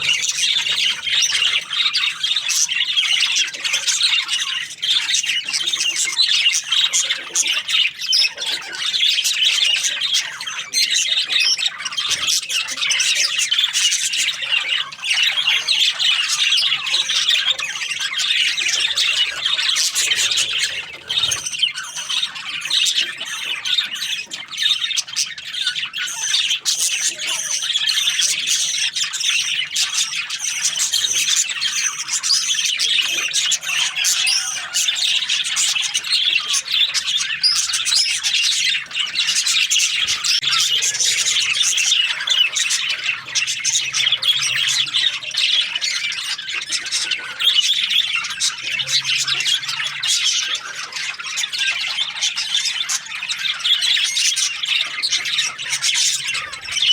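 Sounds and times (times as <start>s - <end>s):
budgerigars chattering: 0.0s - 56.9s.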